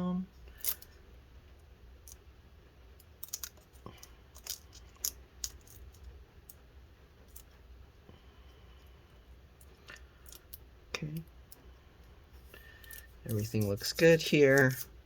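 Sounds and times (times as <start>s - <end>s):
adhesive tape crinkling: 3.0s - 6.1s.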